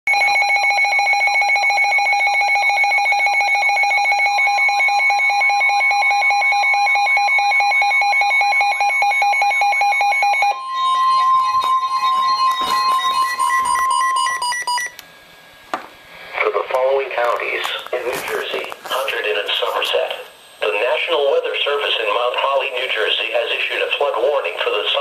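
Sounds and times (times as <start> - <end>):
high steady tone: 10.3 - 15.0
pulsing electronic alert tone: 10.4 - 15.0.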